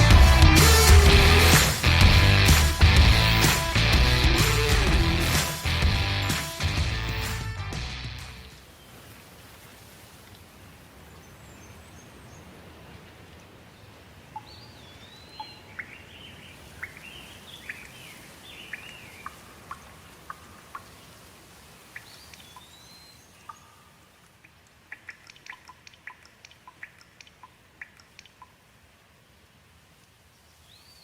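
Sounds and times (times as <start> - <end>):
birds chirping: 0.0 - 7.7, 13.8 - 21.2, 21.8 - 28.6
rain hissing: 0.0 - 11.1.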